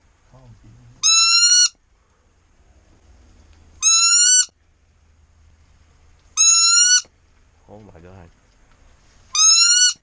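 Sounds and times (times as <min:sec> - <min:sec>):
waterfowl game call: 0:09.4 - 0:10.0.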